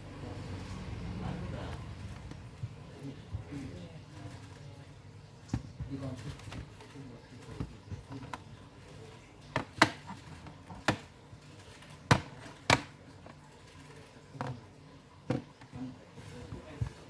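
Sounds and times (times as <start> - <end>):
clicks and knocks on plastic case: 5.4 - 8.6, 9.5 - 11.2, 12.0 - 13.4, 15.3 - 17.0.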